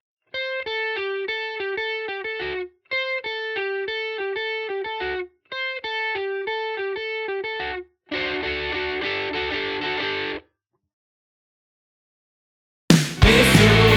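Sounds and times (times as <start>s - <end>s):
electric guitar riff: 0.3s - 10.4s, 13.2s - 13.9s.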